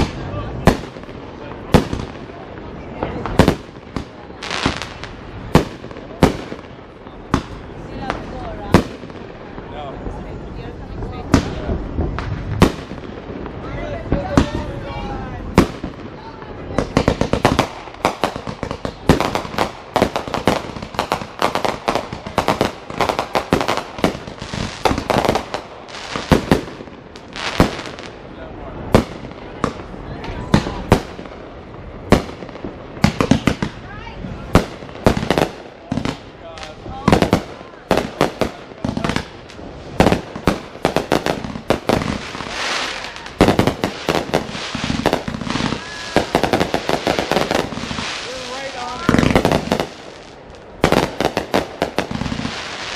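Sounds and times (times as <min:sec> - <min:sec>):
fireworks bangs and pops: 0:00.0 - 0:52.9
fireworks hissing burst: 0:28.9 - 0:52.9.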